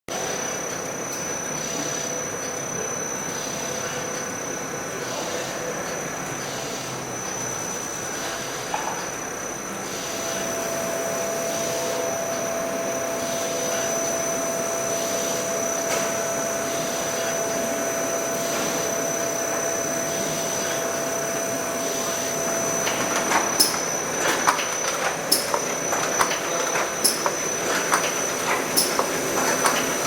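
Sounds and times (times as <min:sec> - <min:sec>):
packaging machine running: 0:09.7 - 0:30.0
sharp mechanical clicks and clatter: 0:22.8 - 0:30.0.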